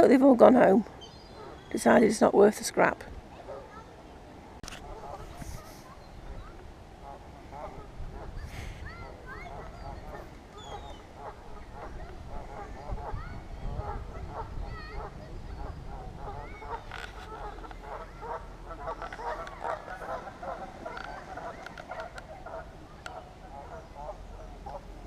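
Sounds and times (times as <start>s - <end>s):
geese honking: 1.0s - 2.0s, 4.8s - 5.7s, 7.0s - 25.0s.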